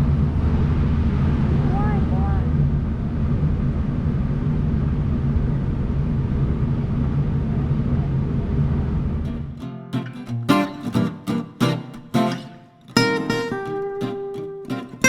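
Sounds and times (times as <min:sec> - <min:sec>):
acoustic guitar music: 0:09.3 - 0:15.0.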